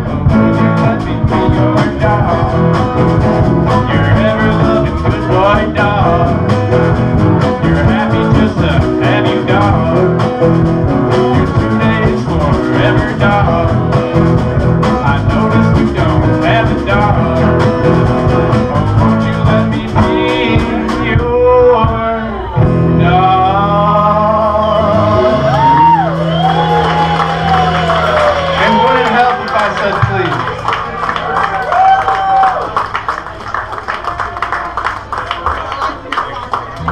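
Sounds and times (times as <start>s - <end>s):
man singing: 0.0s - 26.0s
strummed guitar: 0.0s - 31.1s.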